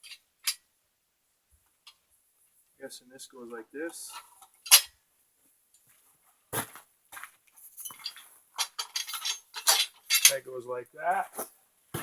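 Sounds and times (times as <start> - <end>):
metal parts clanking: 3.9 - 4.9, 7.8 - 10.4
metal clinks and rattles: 7.8 - 10.4.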